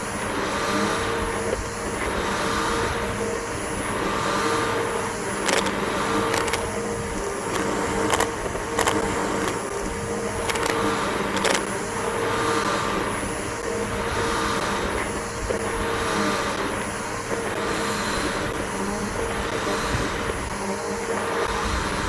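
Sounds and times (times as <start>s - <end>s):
vacuum cleaner running: 0.0s - 22.0s
sharp clicks: 5.4s - 11.8s.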